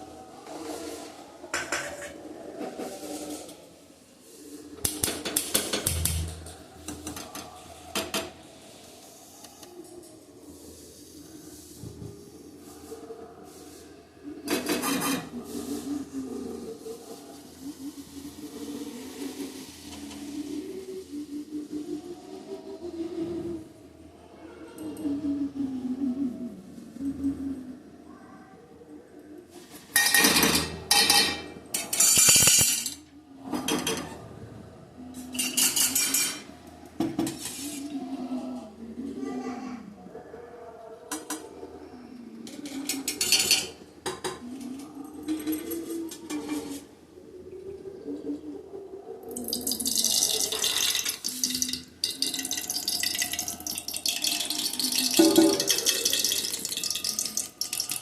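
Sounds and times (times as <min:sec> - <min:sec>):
metal utensils scraping cookware: 0:14.5 - 0:15.3, 0:30.0 - 0:33.0, 0:35.4 - 0:36.5
tap water running into sink: 0:49.4 - 0:58.0.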